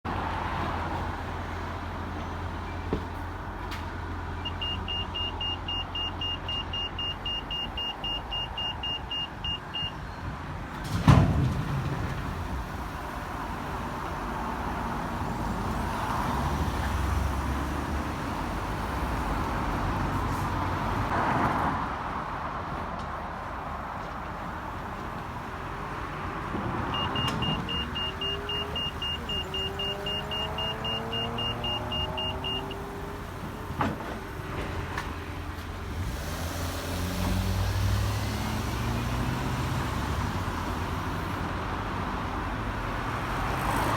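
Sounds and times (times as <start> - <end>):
road traffic: 0.0 - 43.9
pedestrian signal beeping: 4.4 - 10.2, 26.8 - 32.9.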